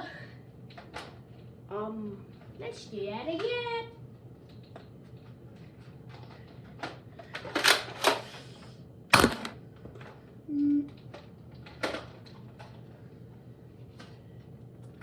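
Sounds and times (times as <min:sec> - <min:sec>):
sharp plastic snap: 0:09.1 - 0:09.6
plastic toy blaster clicks: 0:09.2 - 0:09.6.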